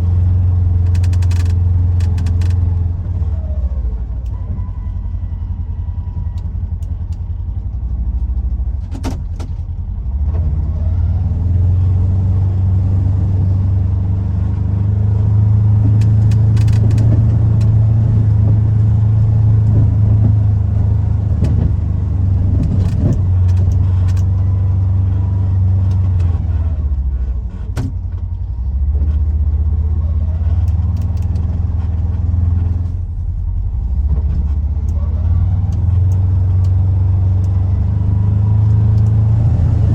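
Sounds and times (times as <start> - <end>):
vehicle engine humming: 0.0 - 39.9.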